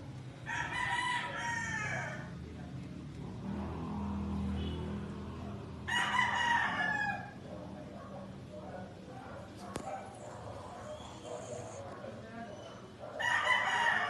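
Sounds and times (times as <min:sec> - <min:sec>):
rooster crowing: 0:00.5 - 0:02.3, 0:05.9 - 0:07.4, 0:13.2 - 0:14.0
dog snoring: 0:10.2 - 0:12.0.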